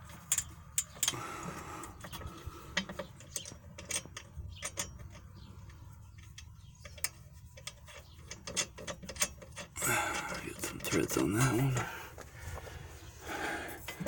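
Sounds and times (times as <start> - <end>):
metal bolts and nuts clinking: 0.1 - 1.2, 2.1 - 12.0.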